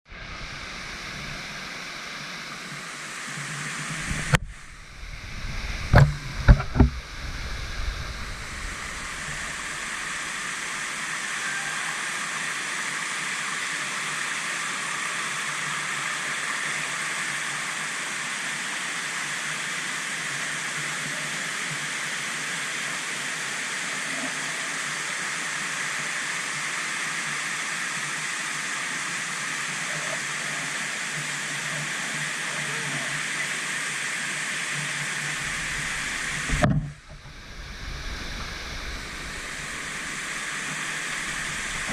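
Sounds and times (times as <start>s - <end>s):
waterfall rushing: 0.2s - 20.6s, 32.3s - 41.9s.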